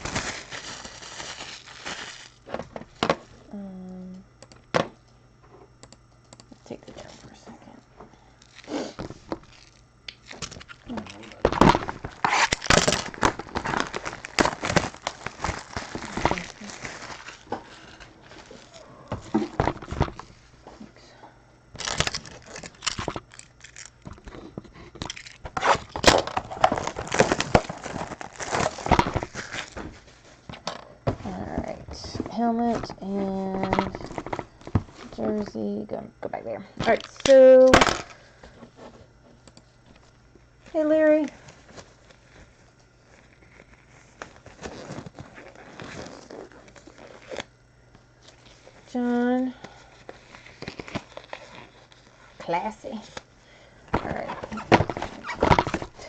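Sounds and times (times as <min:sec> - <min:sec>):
wrappers tearing and crinkling: 0:00.0 - 0:03.0, 0:08.4 - 0:20.5, 0:21.7 - 0:30.5, 0:39.9 - 0:47.5, 0:49.8 - 0:53.2, 0:54.0 - 0:56.0.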